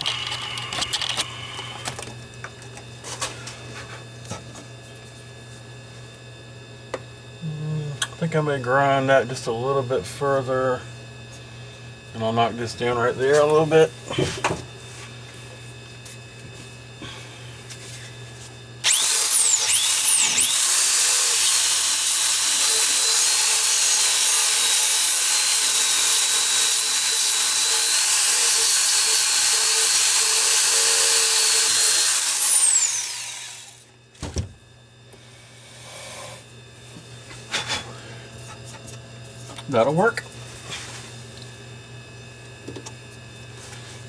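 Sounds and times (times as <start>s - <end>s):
belt sander grinding metal: 18.8s - 33.8s.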